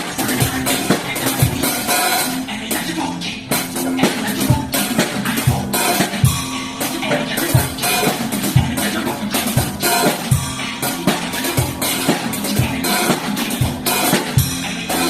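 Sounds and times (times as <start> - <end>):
cajon bass strokes: 0.0 - 2.4
recorded song with steady beat: 0.0 - 15.0.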